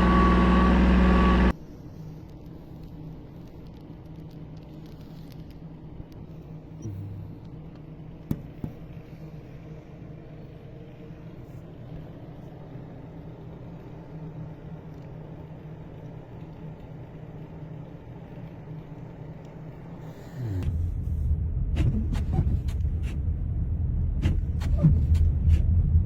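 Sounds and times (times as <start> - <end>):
engine rumbling: 0.0 - 1.6, 6.4 - 11.4, 15.2 - 26.0.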